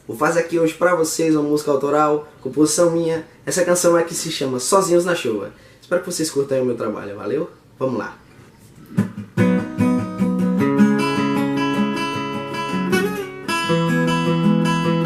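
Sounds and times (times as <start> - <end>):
acoustic guitar strumming: 8.9 - 15.0.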